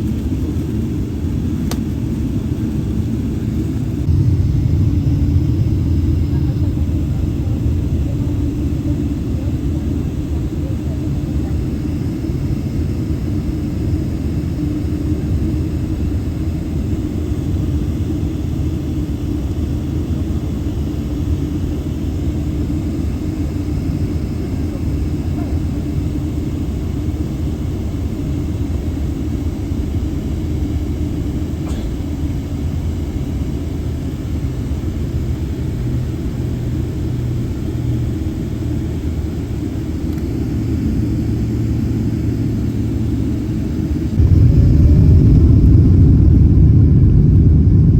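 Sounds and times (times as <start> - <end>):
jet engine rumble in cabin: 0.0 - 47.9
steady hum: 1.0 - 18.0, 37.5 - 47.9.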